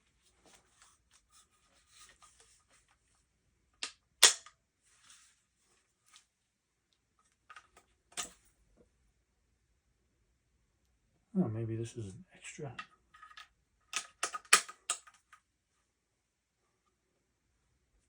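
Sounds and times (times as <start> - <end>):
shotgun parts clacking: 12.8 - 15.2.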